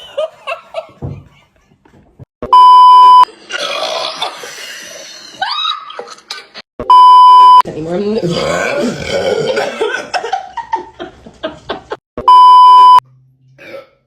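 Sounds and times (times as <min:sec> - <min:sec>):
raspy burp: 0:03.5 - 0:04.8, 0:08.3 - 0:10.0, 0:13.6 - 0:14.0
loud electronic beep: 0:06.8 - 0:07.6, 0:12.2 - 0:13.0.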